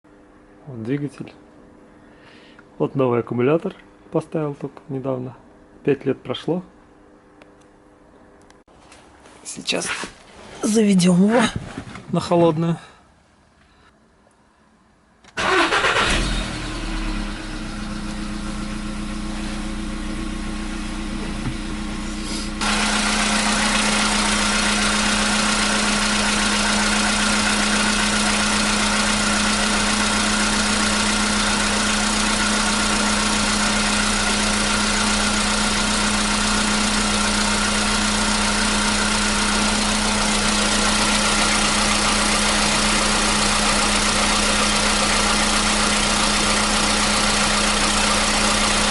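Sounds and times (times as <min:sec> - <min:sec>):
car engine idling: 0:15.4 - 0:48.9.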